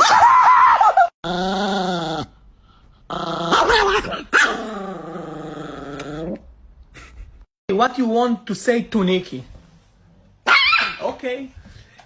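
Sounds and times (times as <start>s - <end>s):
small dog growling: 3.1s - 6.5s.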